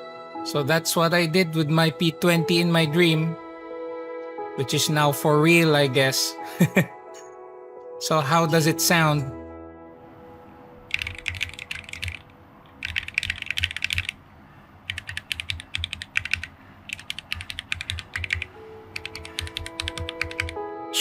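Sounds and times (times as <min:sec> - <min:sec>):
soft background music: 0:00.0 - 0:16.5, 0:17.1 - 0:21.0
rapid keystrokes: 0:10.9 - 0:14.2, 0:14.8 - 0:20.6.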